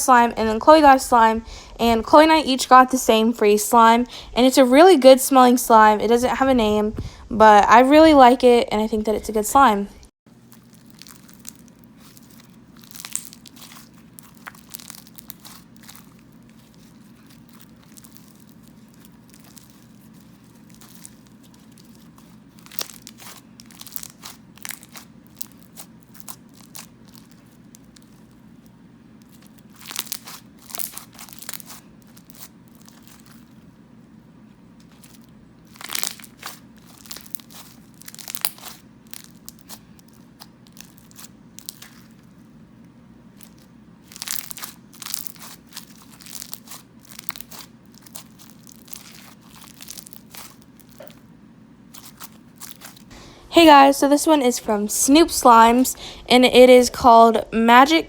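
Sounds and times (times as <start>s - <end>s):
steady low hum: 0.0s - 58.0s
slime squishing and crackling: 10.4s - 33.8s, 34.8s - 53.2s.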